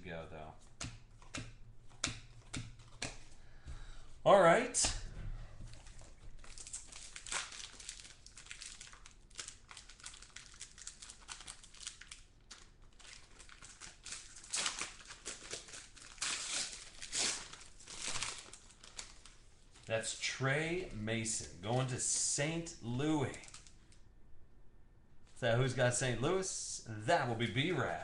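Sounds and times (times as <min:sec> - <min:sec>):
card pack wrapper crinkling: 0:05.7 - 0:20.2, 0:23.2 - 0:24.0.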